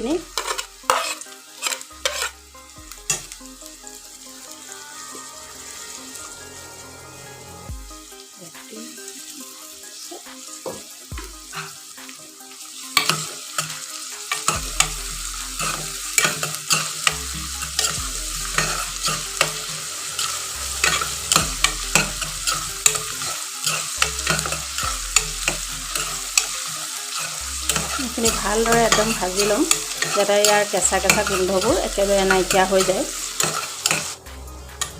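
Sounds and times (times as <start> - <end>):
onions sizzling in oil: 0.0 - 34.9
spatula scraping a pan: 0.2 - 2.4, 10.6 - 12.0, 13.0 - 34.9.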